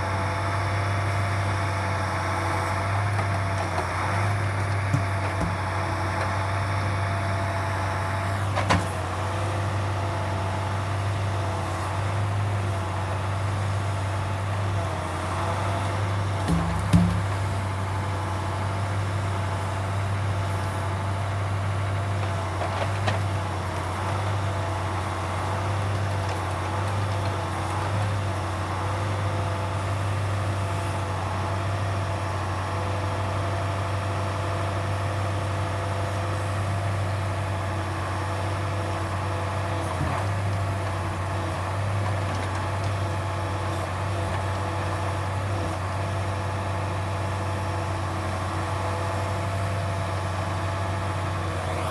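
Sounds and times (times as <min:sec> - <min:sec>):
truck engine droning: 0:00.0 - 0:33.2.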